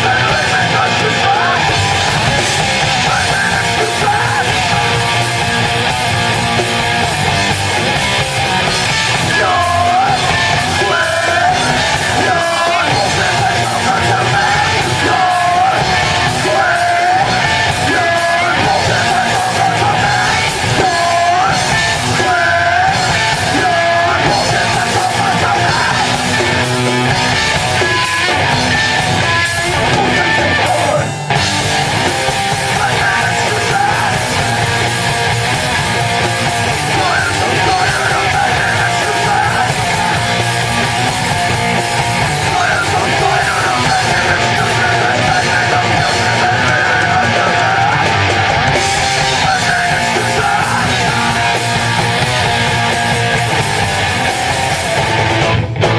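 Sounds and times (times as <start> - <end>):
distorted guitars: 0.0 - 55.9
drums: 0.0 - 55.9
person yelling vocals: 32.6 - 34.8, 36.8 - 40.3, 49.4 - 51.6.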